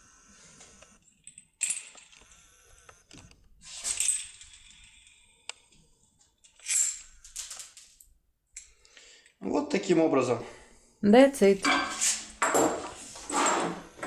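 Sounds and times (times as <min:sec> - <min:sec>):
metal clinking and scraping: 0:11.6 - 0:14.0
ringing metallic scrapes: 0:11.6 - 0:14.0.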